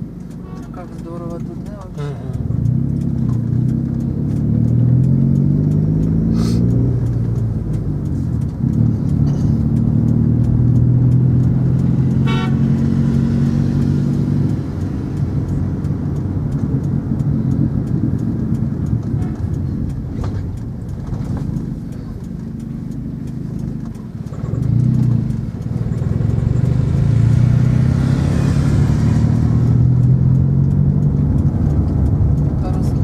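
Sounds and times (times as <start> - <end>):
car engine pulling away: 0.0 - 33.0
car horn toot: 12.1 - 13.0, 19.1 - 19.5.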